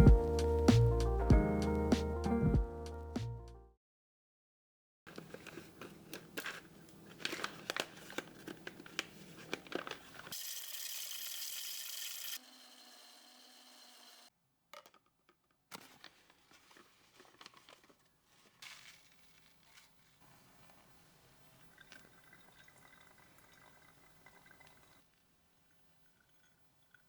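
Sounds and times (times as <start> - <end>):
packaging crinkling and tearing: 5.1 - 10.4, 15.7 - 20.0.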